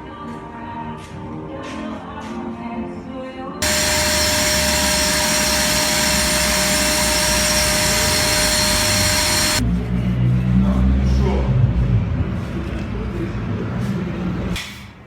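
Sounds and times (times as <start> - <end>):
power tool motor whining: 3.6 - 9.6.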